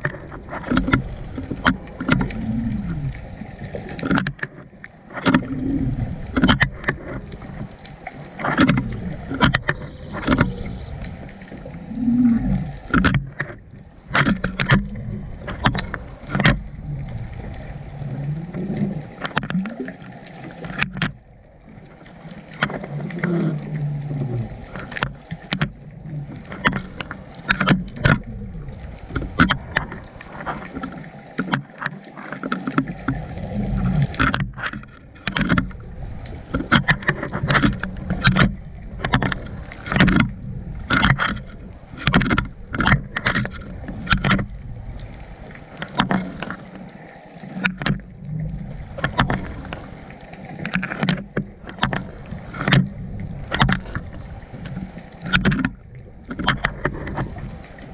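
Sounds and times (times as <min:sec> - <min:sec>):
muffled underwater rumble: 0:00.0 - 0:57.9
irregular clicks and knocks: 0:12.9 - 0:16.7, 0:34.0 - 0:35.7, 0:47.6 - 0:48.0, 0:50.6 - 0:52.9, 0:53.5 - 0:57.4.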